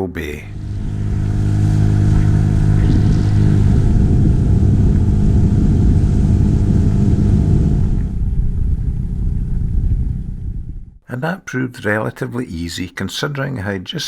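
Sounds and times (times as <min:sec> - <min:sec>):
wind rushing: 0:00.0 - 0:11.0
outboard motor running: 0:00.5 - 0:08.4.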